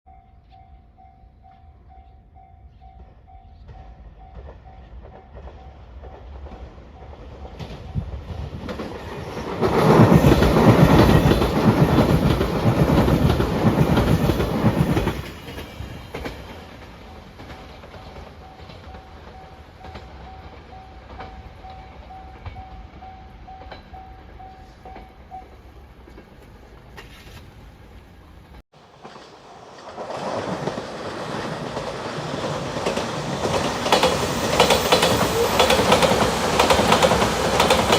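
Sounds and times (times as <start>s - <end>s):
train wheels clattering over rail joints: 4.4s - 21.5s, 28.8s - 37.9s
level crossing warning bell: 17.1s - 25.8s.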